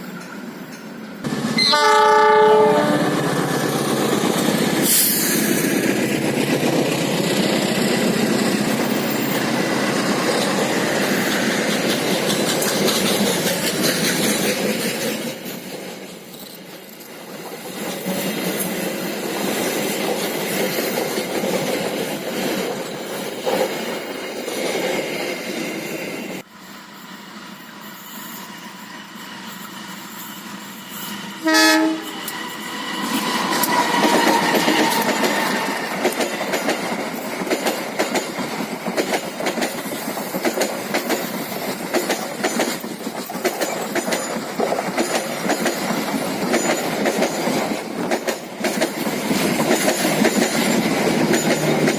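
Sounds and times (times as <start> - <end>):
train passing: 0.0 - 51.9
locomotive air horn blast: 1.3 - 3.1, 31.4 - 32.3
train wheels clacking over rail joints: 2.7 - 25.6, 32.1 - 51.9.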